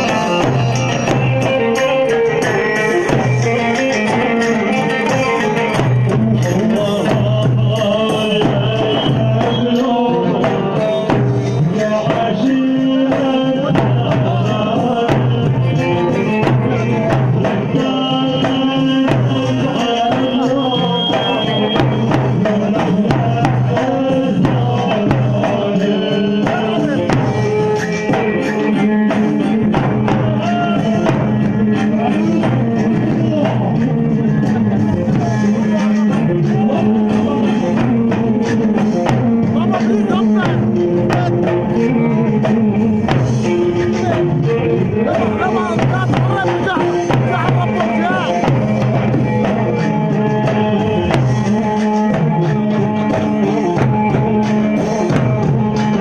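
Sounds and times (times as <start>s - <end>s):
steady percussion beat: 0.0s - 56.0s.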